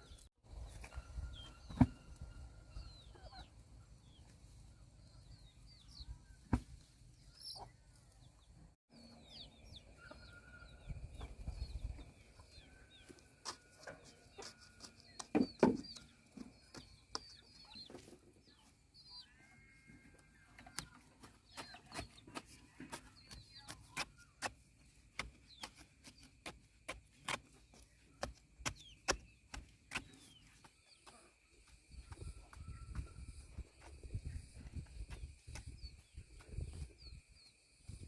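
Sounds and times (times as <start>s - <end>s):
chickens clucking: 7.2s - 8.5s, 20.1s - 26.3s.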